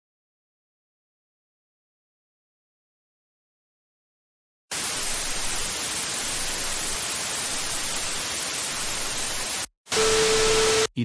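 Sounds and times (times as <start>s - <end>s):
white-noise static hiss: 4.7s - 10.9s.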